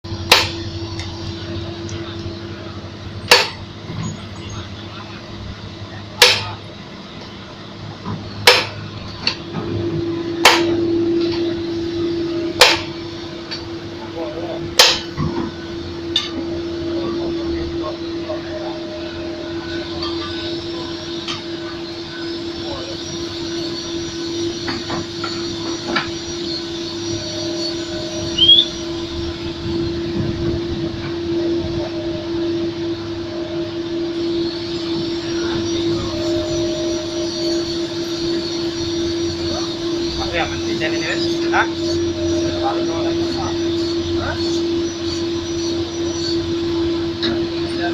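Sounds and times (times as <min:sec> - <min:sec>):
steady hum: 0:00.0 - 0:47.9
sharp metal clanks: 0:03.3 - 0:03.6, 0:06.2 - 0:06.6, 0:08.4 - 0:09.4, 0:10.4 - 0:11.5, 0:14.8 - 0:15.2
short rising squeak: 0:04.0 - 0:04.7, 0:19.1 - 0:30.2, 0:31.8 - 0:47.0.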